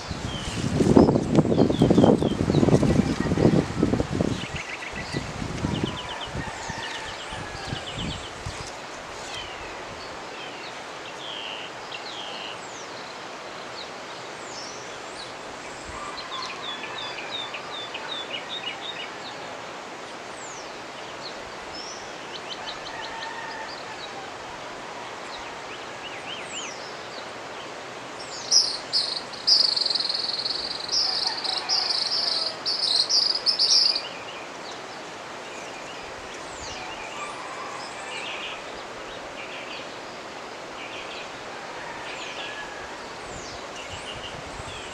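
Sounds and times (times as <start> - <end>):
mountain river rushing: 0.0 - 44.9
birds chirping and calling: 28.3 - 34.2.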